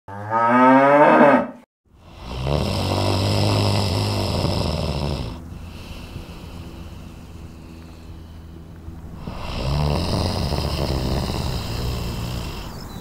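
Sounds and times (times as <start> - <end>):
person snoring loudly: 2.0 - 6.5, 9.2 - 13.0.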